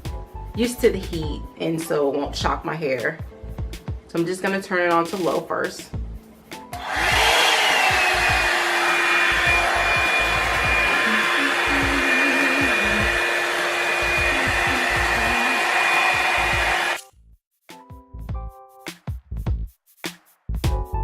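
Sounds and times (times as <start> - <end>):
hair dryer running: 6.7 - 17.0.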